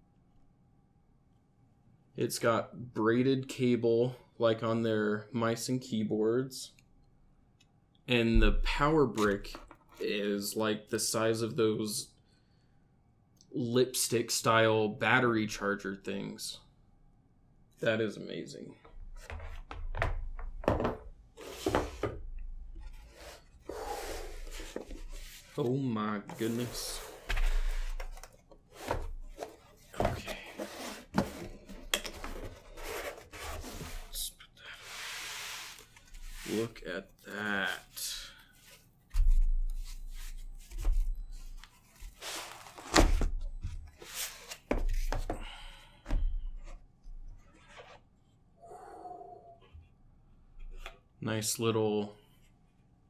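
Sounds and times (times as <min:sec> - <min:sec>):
items knocking and thunking: 0:18.9 - 0:25.5, 0:26.3 - 0:34.0, 0:40.6 - 0:47.3
packaging rustling and scraping: 0:26.3 - 0:34.2, 0:39.7 - 0:43.2, 0:43.8 - 0:45.3.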